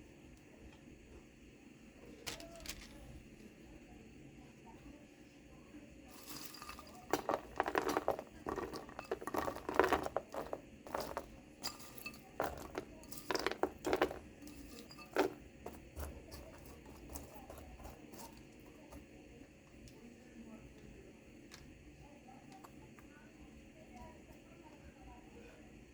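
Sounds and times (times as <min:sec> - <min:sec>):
utensils clicking and scraping: 0:06.1 - 0:19.0.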